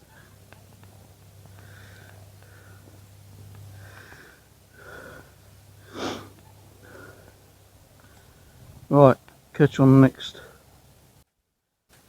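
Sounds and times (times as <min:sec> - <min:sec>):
breathy sniff: 0:03.8 - 0:07.4.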